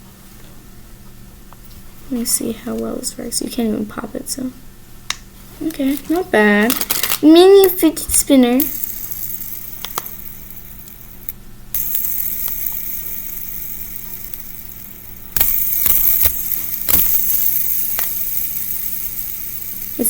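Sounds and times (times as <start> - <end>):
fidget spinner whirring: 5.6 - 20.0.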